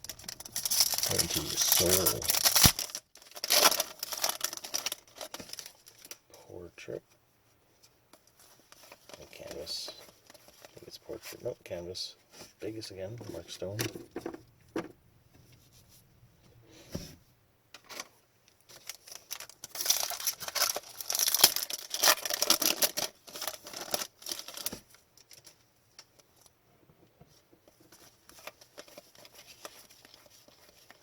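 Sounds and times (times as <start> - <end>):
foil wrapper tearing and crinkling: 0.0 - 6.2, 18.8 - 25.5, 28.3 - 31.0.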